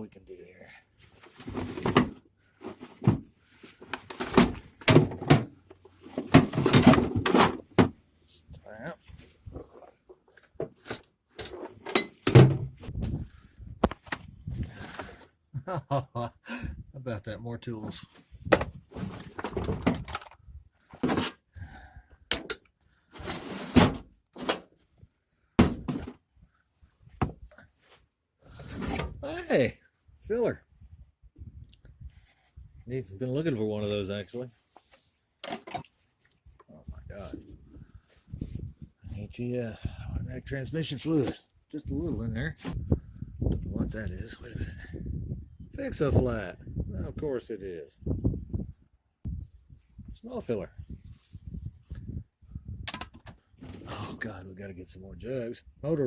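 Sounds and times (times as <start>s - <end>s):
tools clattering in toolbox: 1.2s - 3.2s, 3.8s - 7.8s, 10.8s - 12.7s.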